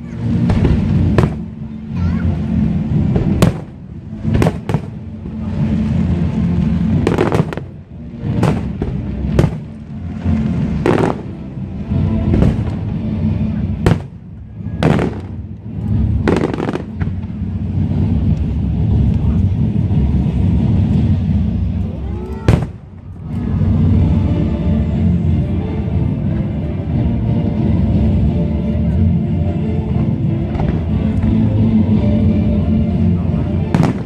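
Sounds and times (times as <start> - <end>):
low rumble: 0.0 - 34.0.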